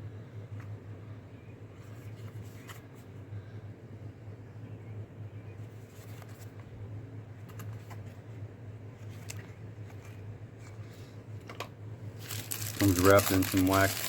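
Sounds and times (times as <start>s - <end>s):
steady low hum: 0.0s - 14.0s
cardboard box being opened: 12.2s - 14.0s.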